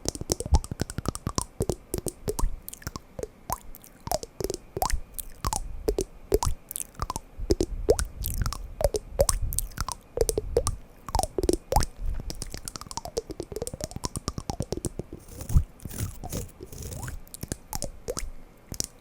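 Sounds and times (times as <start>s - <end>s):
wood sliding and scraping: 15.2s - 17.2s.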